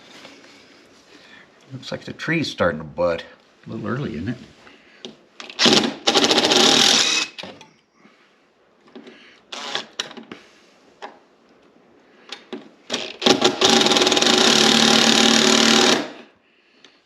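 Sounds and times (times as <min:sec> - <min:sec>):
power driver driving screws: 0:05.4 - 0:07.6, 0:09.5 - 0:10.2, 0:12.9 - 0:16.3.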